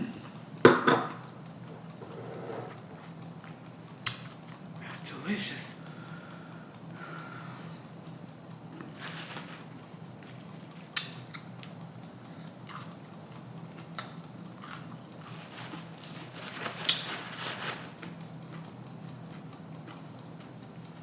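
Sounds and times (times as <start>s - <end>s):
crunchy food chewing: 1.9s - 4.7s, 8.7s - 18.7s.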